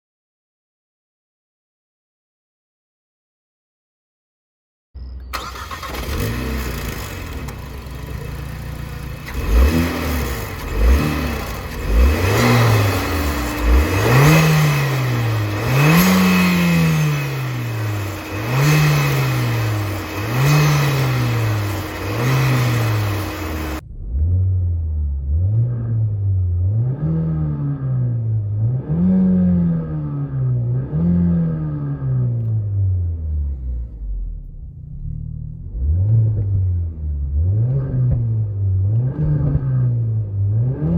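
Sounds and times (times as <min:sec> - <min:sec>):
car engine idling and revving: 0:05.0 - 0:40.9.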